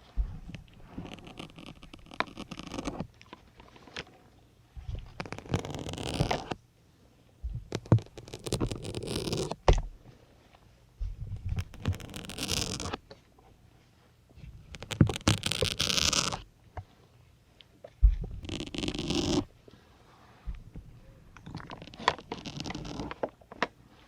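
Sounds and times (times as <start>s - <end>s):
needles scraping out of sponge: 0.4s - 3.1s, 5.0s - 6.6s, 7.6s - 9.6s, 11.4s - 13.0s, 14.6s - 16.4s, 18.2s - 19.5s, 21.3s - 23.3s.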